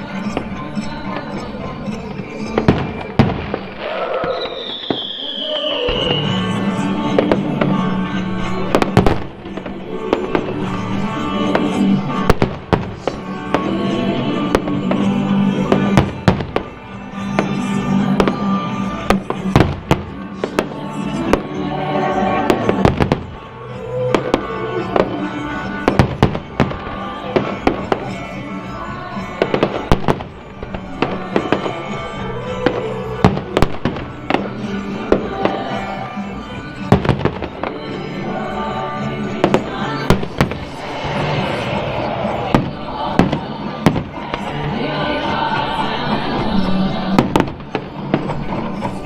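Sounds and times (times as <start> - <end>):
fireworks bursting: 0.0 - 49.0
music playing: 0.0 - 49.0.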